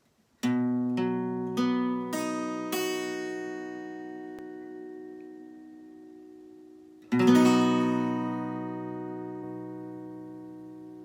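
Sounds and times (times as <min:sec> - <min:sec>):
guitar chord plucked: 0:00.4 - 0:11.0.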